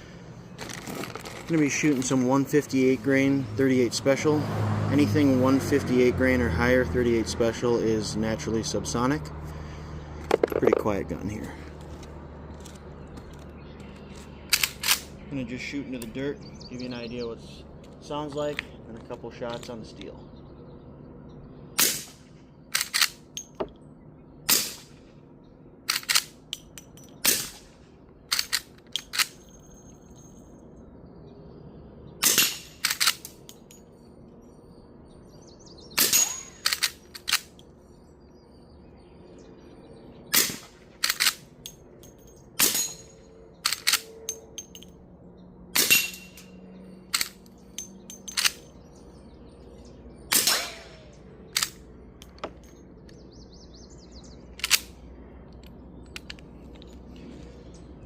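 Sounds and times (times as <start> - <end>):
bullets ricocheting off steel: 21.8 - 22.3, 24.5 - 24.9, 27.2 - 27.7, 36.0 - 36.6, 40.3 - 40.8, 45.8 - 46.5, 50.3 - 51.2
suppressed rifle shots: 50.3 - 51.1.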